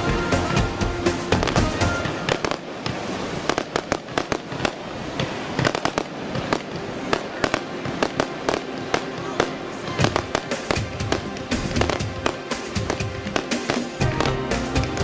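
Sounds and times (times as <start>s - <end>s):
music: 0.0s - 2.6s, 6.8s - 15.0s
fireworks bangs and crackles: 0.0s - 15.0s.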